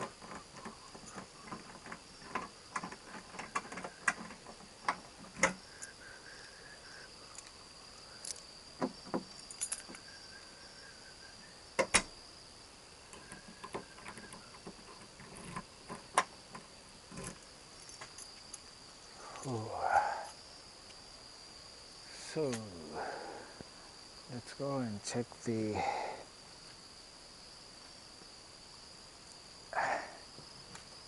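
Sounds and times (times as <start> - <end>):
sharp clicks and knocks: 0.0 - 5.6, 8.2 - 10.0, 11.8 - 12.1, 13.1 - 18.5
crickets trilling: 0.0 - 31.0.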